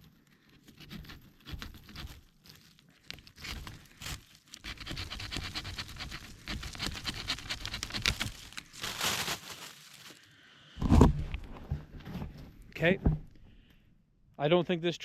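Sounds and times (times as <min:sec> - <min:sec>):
saw blade sawing wood: 0:03.4 - 0:08.4.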